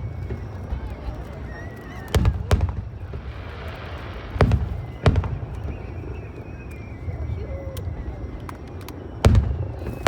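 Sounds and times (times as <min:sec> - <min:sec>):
fireworks bursting: 0:02.0 - 0:06.0, 0:09.2 - 0:10.0.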